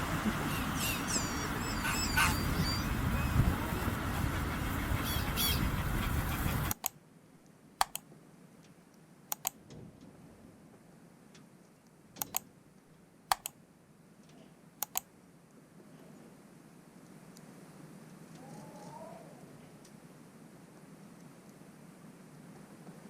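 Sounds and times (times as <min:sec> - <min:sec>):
sharp clicks or taps: 0:13.3 - 0:13.5.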